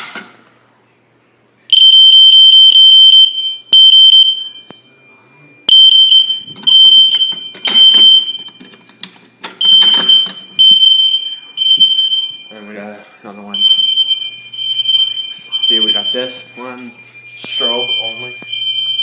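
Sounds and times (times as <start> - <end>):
fire alarm horn blasts: 1.7 - 4.7, 5.6 - 8.6, 9.6 - 19.0.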